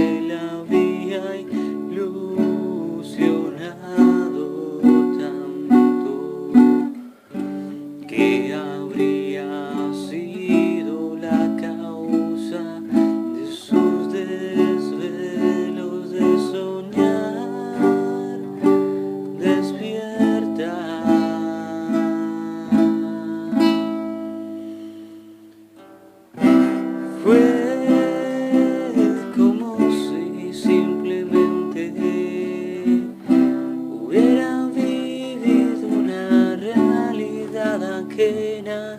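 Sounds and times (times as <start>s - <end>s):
acoustic plucked strings music: 0.0s - 38.9s.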